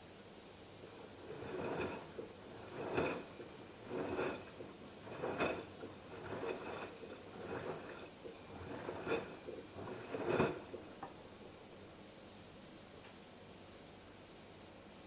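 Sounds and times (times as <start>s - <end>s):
laundry swishing in washing machine: 0.8s - 11.5s.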